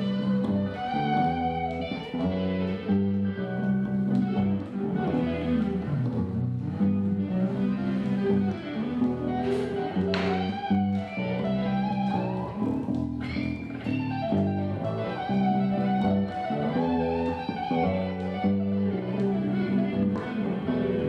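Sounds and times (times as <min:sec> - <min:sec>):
guitar line: 0:00.0 - 0:21.0
held bass notes: 0:00.0 - 0:21.0.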